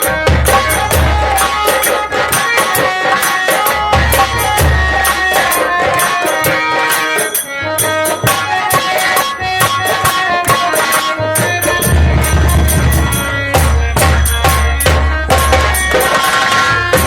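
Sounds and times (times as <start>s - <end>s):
jingling percussion: 0.0s - 17.0s
pitched instruments playing: 0.0s - 17.0s
deep drum notes: 11.7s - 15.8s.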